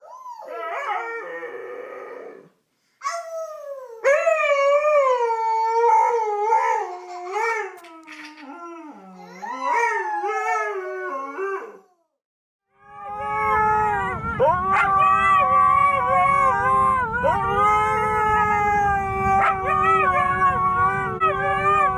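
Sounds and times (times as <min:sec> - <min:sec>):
dogs howling: 0:04.0 - 0:11.9, 0:12.9 - 0:21.9.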